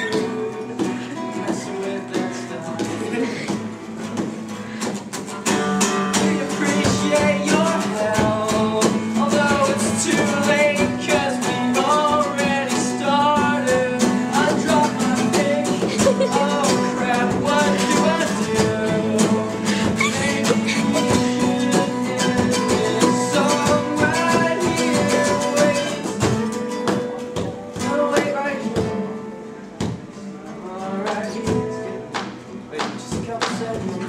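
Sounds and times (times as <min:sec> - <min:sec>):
acoustic guitar: 0:00.0 - 0:34.0
man singing: 0:00.0 - 0:34.0.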